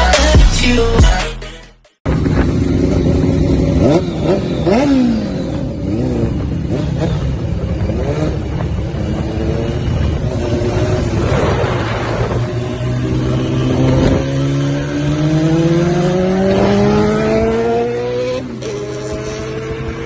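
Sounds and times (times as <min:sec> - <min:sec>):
motorcycle engine revving: 0:02.1 - 0:20.0
rush of noise: 0:08.1 - 0:14.0.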